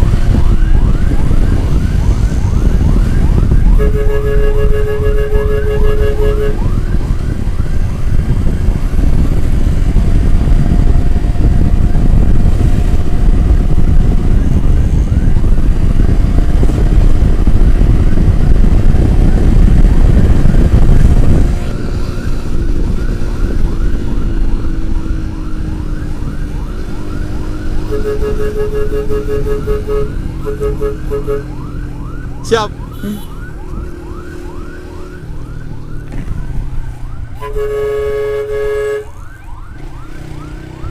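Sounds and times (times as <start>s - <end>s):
wind rushing over microphone: 0.0s - 40.9s.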